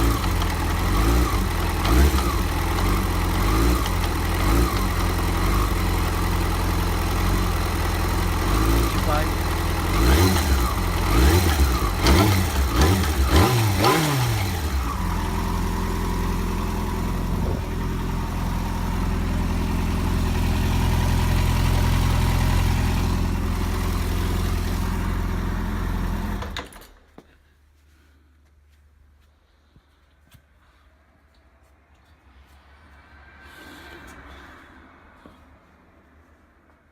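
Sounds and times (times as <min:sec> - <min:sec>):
motorcycle engine idling: 0:00.0 - 0:26.6
motorcycle engine revving: 0:00.0 - 0:26.8.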